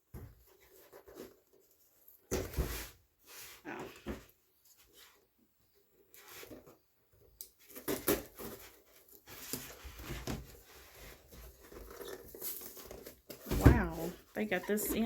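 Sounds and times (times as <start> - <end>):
cardboard box rustling and scraping: 7.6 - 15.0.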